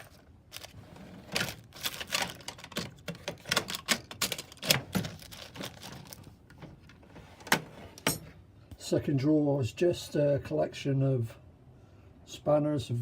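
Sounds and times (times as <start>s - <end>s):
metal drawer shutting and opening: 6.6s - 8.4s.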